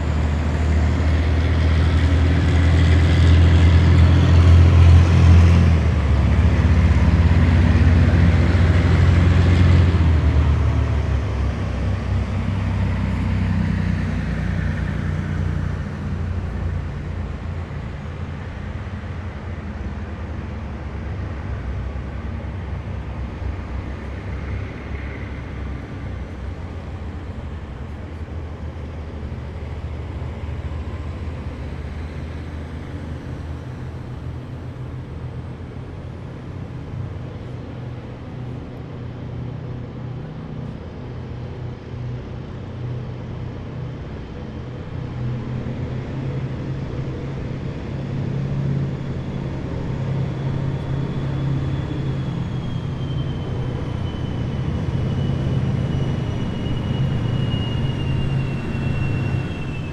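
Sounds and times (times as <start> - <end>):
heavy military vehicles driving past: 0.0 - 59.9
high whine: 43.6 - 59.9.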